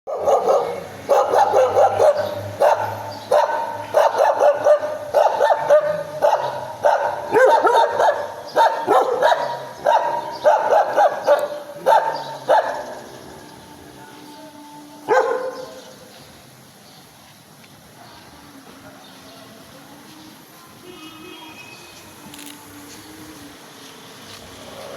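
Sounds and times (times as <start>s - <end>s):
dog barking shrilly: 0.1s - 13.0s, 15.1s - 15.8s.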